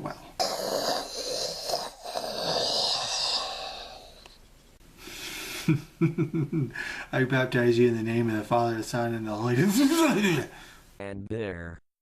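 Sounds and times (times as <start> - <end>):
person blowing breathily: 5.0 - 5.8.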